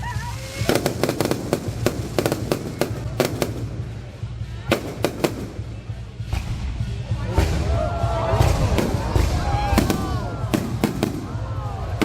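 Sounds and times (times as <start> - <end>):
fireworks bangs: 0.3 - 12.0.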